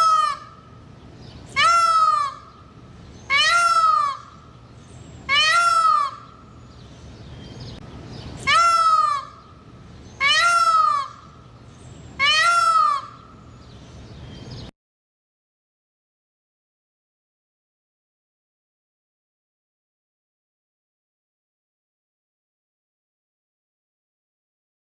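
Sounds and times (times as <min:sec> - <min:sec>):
peacock wailing cries: 0:00.0 - 0:06.8, 0:08.3 - 0:13.6.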